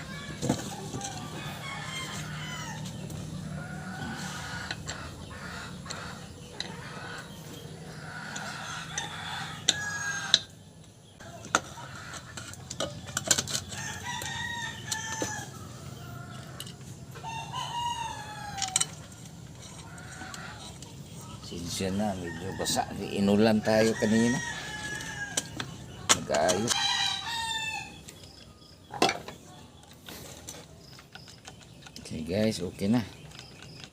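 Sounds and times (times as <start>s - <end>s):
rooster crowing: 0.0s - 6.2s, 7.9s - 10.5s, 13.6s - 19.0s, 21.8s - 25.6s, 26.3s - 28.0s
chickens clucking: 0.0s - 33.9s.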